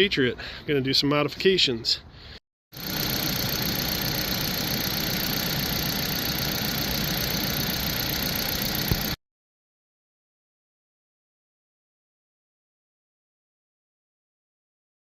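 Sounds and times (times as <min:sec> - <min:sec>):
vehicle engine idling: 0:02.8 - 0:09.2.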